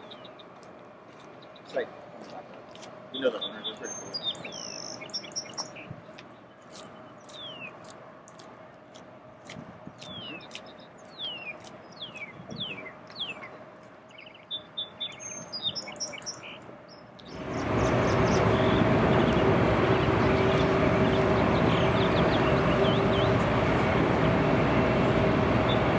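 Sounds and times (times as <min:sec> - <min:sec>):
small birds chirping: 0:00.0 - 0:25.9
loud roar with low hum: 0:17.3 - 0:25.9.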